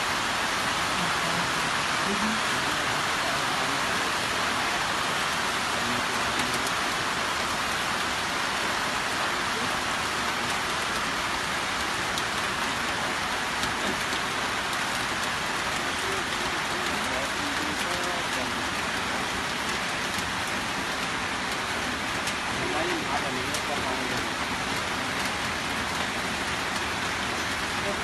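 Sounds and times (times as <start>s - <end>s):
heavy rain hiss: 0.0s - 28.0s.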